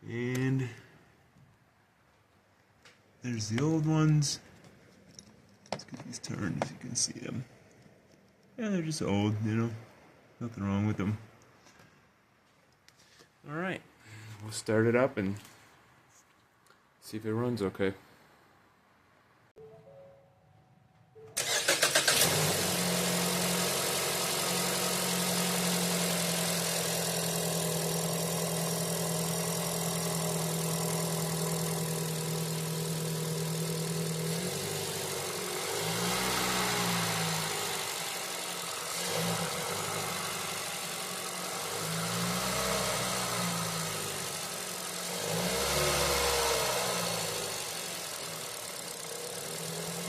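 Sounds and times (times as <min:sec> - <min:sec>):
car engine cranking and starting: 0:21.4 - 0:50.0
car engine idling: 0:21.4 - 0:50.0
engine revving: 0:21.4 - 0:50.0.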